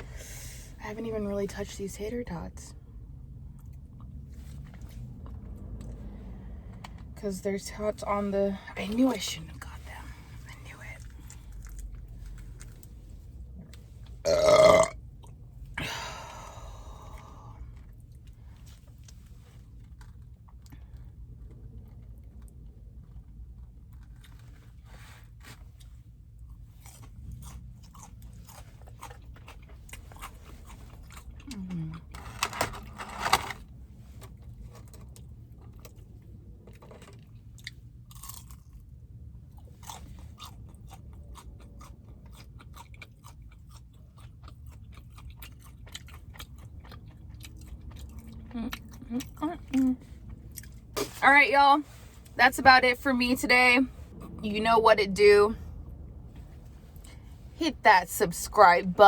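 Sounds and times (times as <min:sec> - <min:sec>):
person chewing and crunching food: 0:10.4 - 0:16.0, 0:16.7 - 0:33.5, 0:34.1 - 0:51.2.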